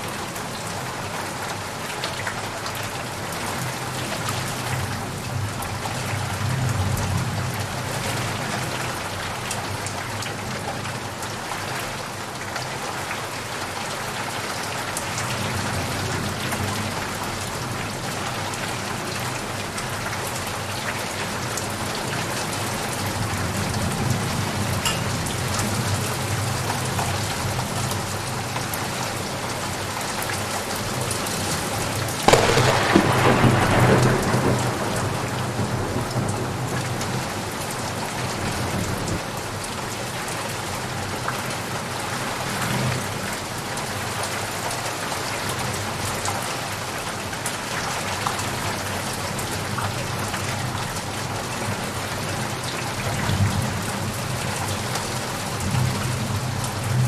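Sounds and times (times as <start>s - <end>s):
heavy rain: 0.0s - 57.0s
thunderclap rumbling: 32.3s - 37.0s.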